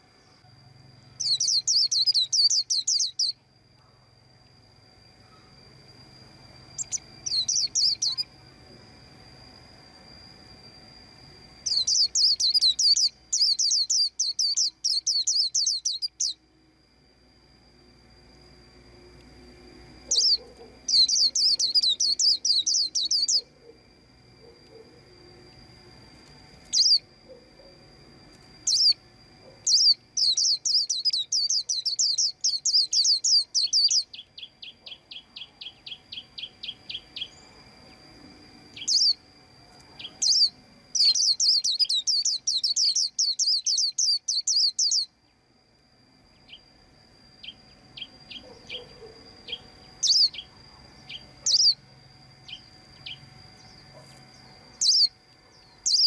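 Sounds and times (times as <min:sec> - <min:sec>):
bird chirping: 0:01.1 - 0:03.4, 0:06.7 - 0:08.3, 0:11.6 - 0:16.4, 0:20.1 - 0:23.8, 0:26.6 - 0:27.7, 0:28.6 - 0:38.0, 0:38.7 - 0:39.2, 0:40.0 - 0:45.2, 0:47.4 - 0:51.8, 0:52.4 - 0:56.0
lower bird notes: 0:05.1 - 0:16.6, 0:18.7 - 0:23.8.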